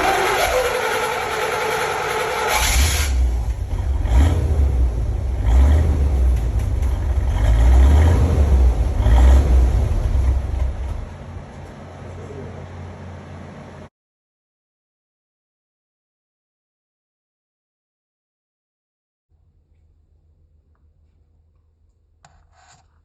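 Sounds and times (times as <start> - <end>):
car engine rumbling and revving: 0.0 - 13.9.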